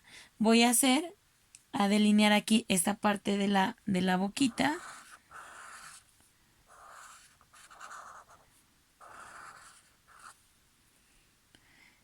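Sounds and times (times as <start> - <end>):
marker pen drawing on paper: 4.4 - 6.1, 6.7 - 10.4.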